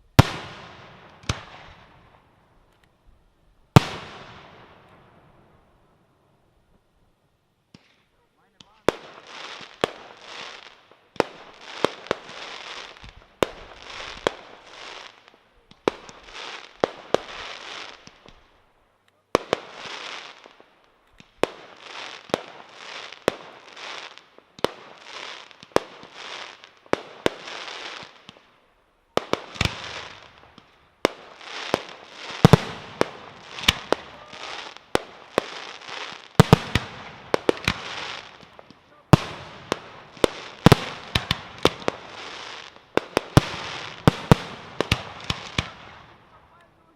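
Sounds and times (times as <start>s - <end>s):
firework shells bursting: 29.3s - 46.4s.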